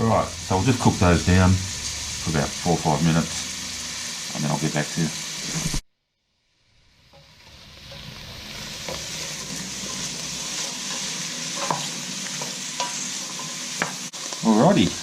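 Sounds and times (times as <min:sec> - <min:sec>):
vegetables sizzling in oil: 0:00.0 - 0:05.8, 0:06.5 - 0:15.0.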